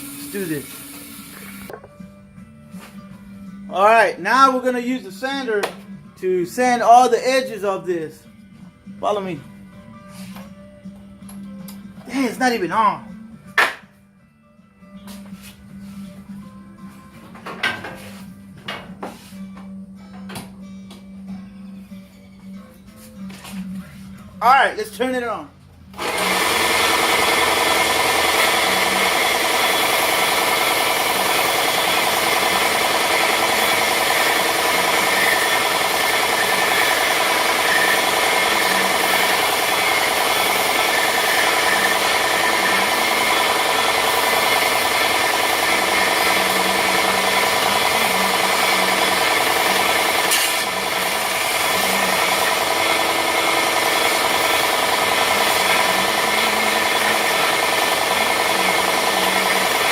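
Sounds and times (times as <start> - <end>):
electric sander sanding wood: 26.0 - 59.9.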